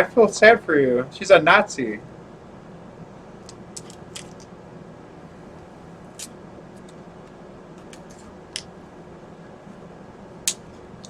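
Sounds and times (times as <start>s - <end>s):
low room hum: 0.0s - 11.0s
sharp clicks and crinkles: 3.4s - 4.5s, 6.2s - 8.7s.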